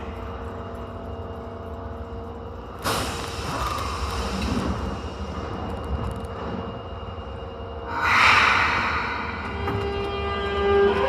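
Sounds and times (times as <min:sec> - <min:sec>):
subway car running rumble: 0:00.0 - 0:11.0.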